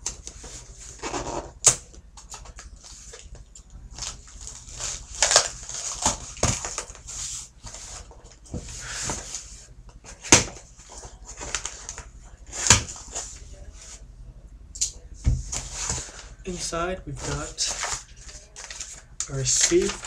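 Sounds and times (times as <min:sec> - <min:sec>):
cardboard box and paper crinkling: 0:17.2 - 0:20.0.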